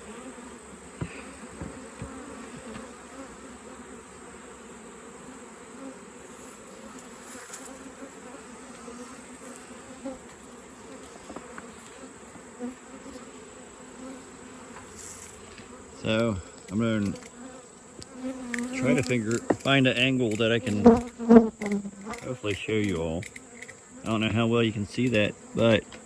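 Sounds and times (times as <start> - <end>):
honeybees buzzing: 0.0 - 26.0
faint ticks: 14.8 - 17.4, 18.0 - 24.2.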